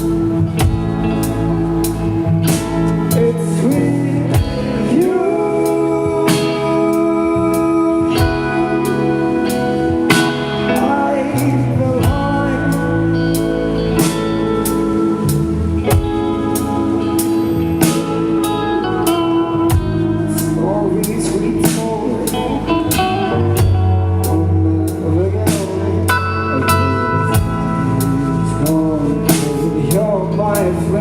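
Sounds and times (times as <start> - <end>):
steady drum beat: 0.0 - 5.2, 14.0 - 26.1, 26.7 - 30.9
bass guitar: 0.0 - 31.0
lead guitar bending notes: 0.0 - 31.0.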